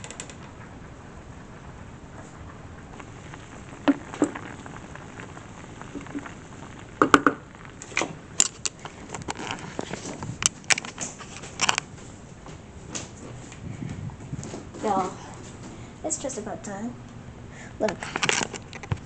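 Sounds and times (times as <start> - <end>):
sharp knocks and clicks: 7.0 - 9.4.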